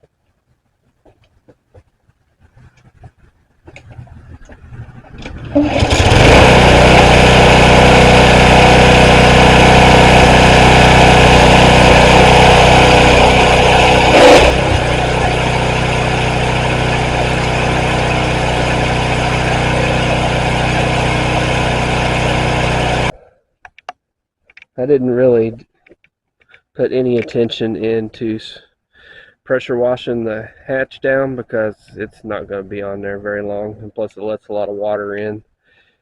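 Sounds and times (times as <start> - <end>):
pressure washer spraying water: 5.5 - 23.1.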